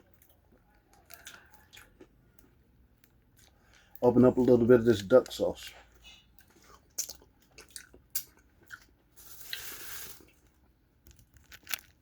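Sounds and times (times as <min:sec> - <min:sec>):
wet squishy hiss of sauce: 0:09.2 - 0:10.4
sauce packet clicks and crinkles: 0:11.0 - 0:12.0.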